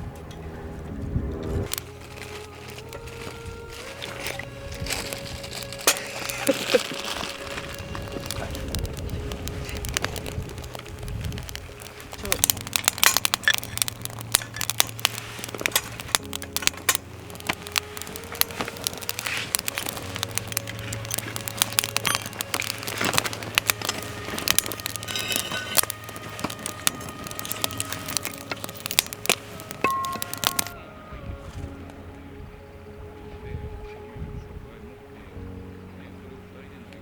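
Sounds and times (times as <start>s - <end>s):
campfire crackling and popping: 0.0s - 33.1s
soft background music: 0.0s - 37.0s.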